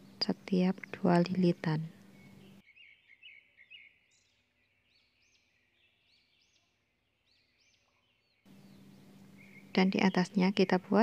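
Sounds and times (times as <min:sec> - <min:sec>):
faint birds chirping: 0:00.0 - 0:11.0.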